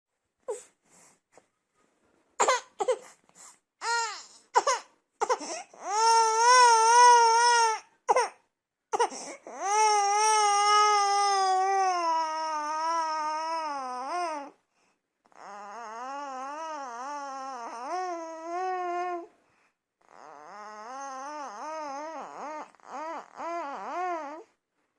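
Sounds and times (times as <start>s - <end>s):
baby crying: 3.8s - 14.6s, 15.3s - 19.3s, 20.0s - 24.5s.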